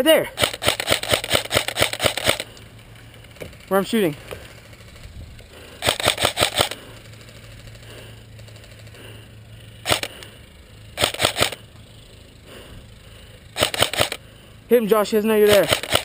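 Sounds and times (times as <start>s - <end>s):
airsoft rifle firing bursts: 0.2s - 2.5s, 5.6s - 7.6s, 9.8s - 10.2s, 11.0s - 11.6s, 13.6s - 14.2s, 15.4s - 16.0s.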